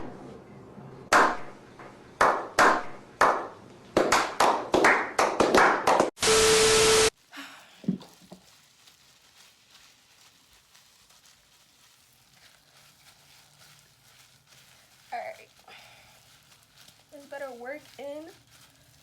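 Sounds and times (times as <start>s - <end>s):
sharp hand claps: 1.1s - 1.5s, 2.2s - 6.1s
harsh buzzing tone: 6.2s - 7.1s.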